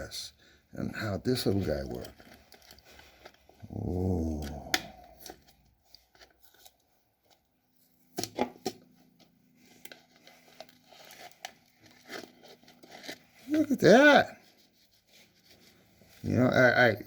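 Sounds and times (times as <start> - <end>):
small clicks and rustles: 5.1 - 13.5.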